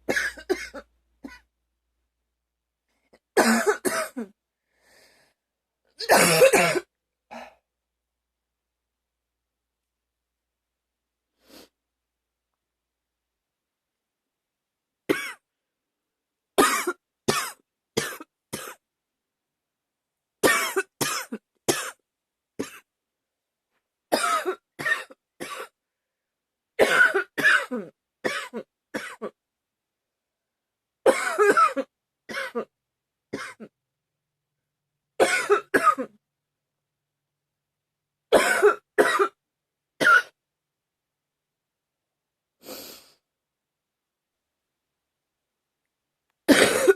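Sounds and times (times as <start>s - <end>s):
woman coughing: 0.1s - 1.5s, 3.4s - 4.4s, 6.0s - 7.6s, 20.4s - 22.0s, 24.1s - 25.8s, 26.8s - 29.4s, 31.1s - 32.7s, 35.2s - 36.2s, 38.4s - 39.4s, 46.5s - 46.9s.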